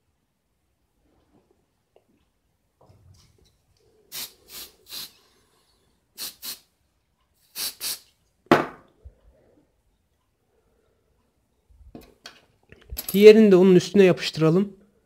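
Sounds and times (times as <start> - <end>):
short hissing puffs of air: 4.0 - 6.7, 7.4 - 8.2.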